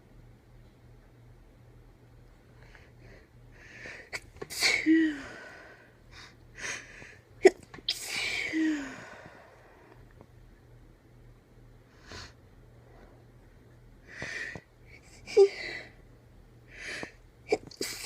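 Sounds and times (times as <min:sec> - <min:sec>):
woman sneezing: 0:04.4 - 0:05.3, 0:07.4 - 0:09.0, 0:17.5 - 0:18.0.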